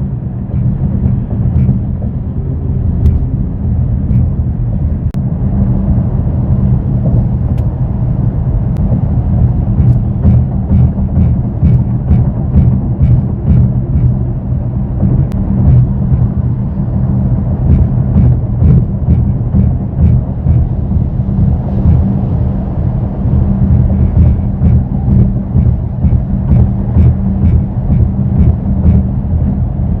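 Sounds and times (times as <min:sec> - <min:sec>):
car cabin road noise drone: 0:00.0 - 0:30.0
light ticking rattle: 0:08.8 - 0:30.0.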